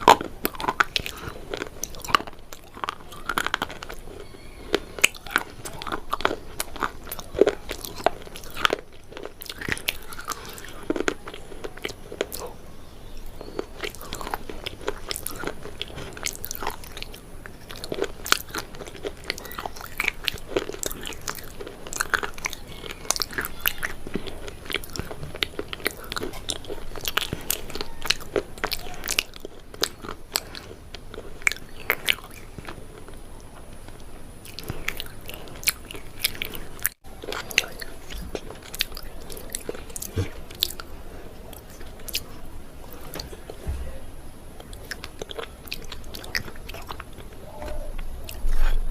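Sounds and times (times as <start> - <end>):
crunching and chewing: 0.0 - 48.9.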